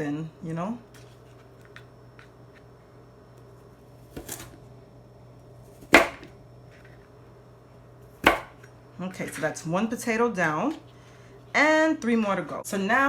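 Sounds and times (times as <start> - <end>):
knife cutting sweet potato: 4.0 - 4.6, 5.7 - 6.3, 8.1 - 9.6
knife knocking on work surface: 5.9 - 6.3, 8.2 - 8.6.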